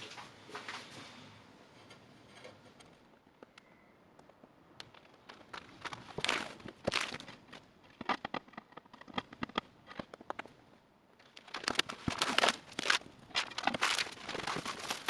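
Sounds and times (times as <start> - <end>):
rustling: 4.8 - 15.0.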